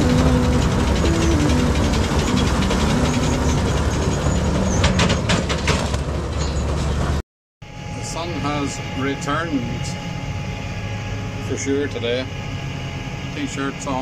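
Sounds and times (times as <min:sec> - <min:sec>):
background music: 0:00.0 - 0:03.7
clattering knocks: 0:00.0 - 0:06.1
tractor engine rumbling: 0:00.0 - 0:14.0.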